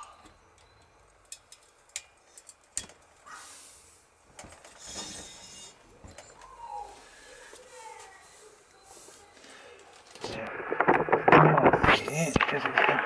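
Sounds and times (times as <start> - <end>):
hissy scraping: 3.2 - 5.8.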